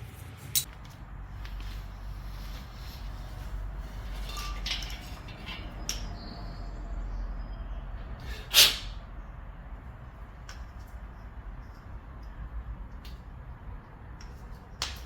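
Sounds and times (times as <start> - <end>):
small metal parts clinking: 4.0 - 6.1
short loud hiss: 8.2 - 9.0.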